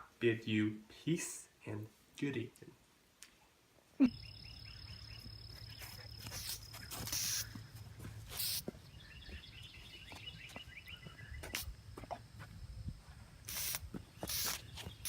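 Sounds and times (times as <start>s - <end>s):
insects chirping: 4.1s - 15.0s
short hisses: 6.3s - 7.6s, 8.3s - 8.6s, 13.5s - 14.6s.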